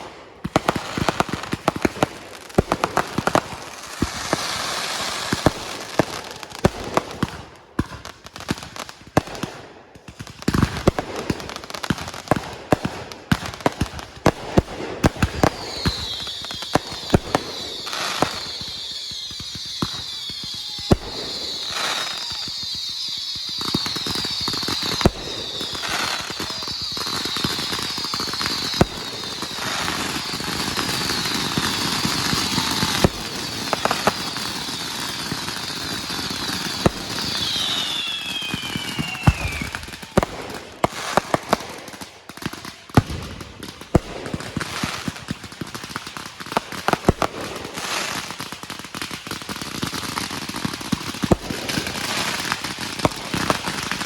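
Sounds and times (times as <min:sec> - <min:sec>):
fireworks bangs and crackling: 0:00.0 - 0:54.0
falling firework whistle: 0:02.9 - 0:06.8, 0:15.0 - 0:43.1.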